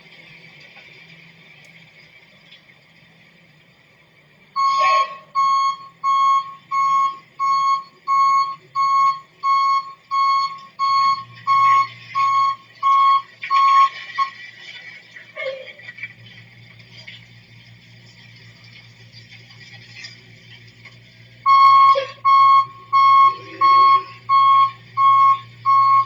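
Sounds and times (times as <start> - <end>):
vehicle back-up alarm beeping: 4.5 - 14.4, 21.4 - 26.0.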